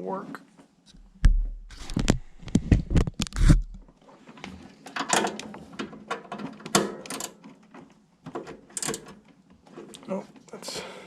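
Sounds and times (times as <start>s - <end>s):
low thud: 1.0s - 3.7s
sharp knocks on metal: 1.2s - 1.7s.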